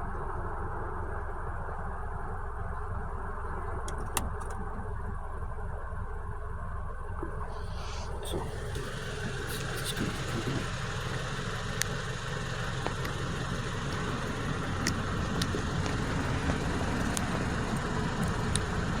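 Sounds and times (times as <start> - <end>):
car engine idling: 0.0 - 19.0
faint clicks: 7.2 - 19.0.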